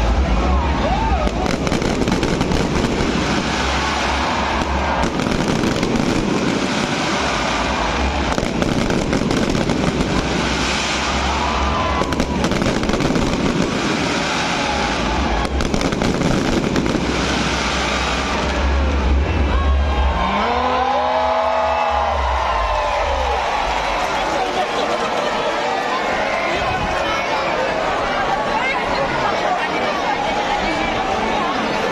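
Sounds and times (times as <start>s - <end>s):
fireworks bursting and crackling: 0.0s - 19.3s
sharp firework cracks: 1.2s - 18.8s.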